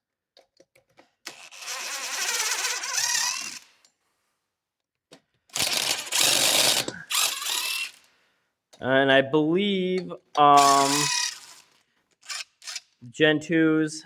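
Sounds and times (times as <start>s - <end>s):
impact wrench hammering: 5.6s - 8.0s.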